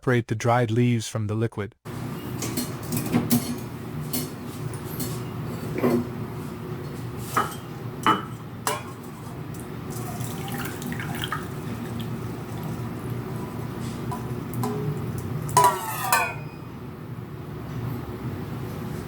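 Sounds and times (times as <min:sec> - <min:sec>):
liquid pouring and dripping: 0:09.5 - 0:15.5
clinks against glass: 0:15.6 - 0:16.6.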